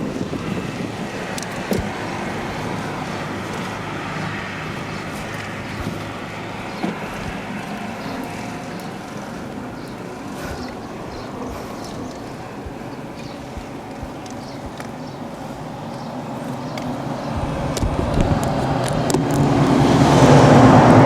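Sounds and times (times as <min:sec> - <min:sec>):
traffic hum and road noise: 0:00.0 - 0:21.0.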